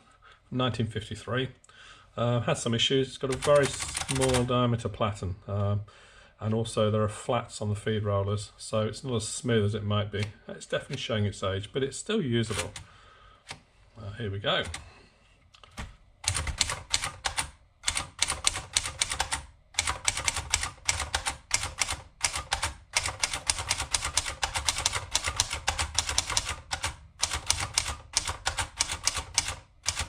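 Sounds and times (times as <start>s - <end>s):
typewriter keys clacking: 3.3s - 4.5s, 16.2s - 30.0s.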